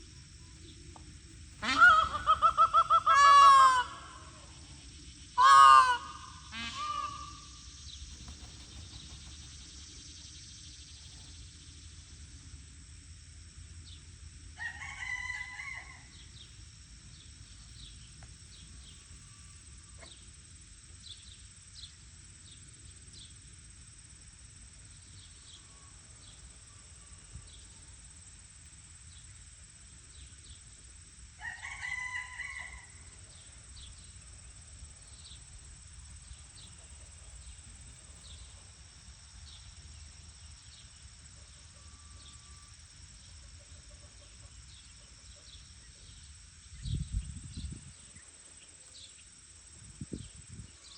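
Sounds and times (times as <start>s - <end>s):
farm fowl calling loudly: 1.6s - 4.6s, 5.4s - 7.6s.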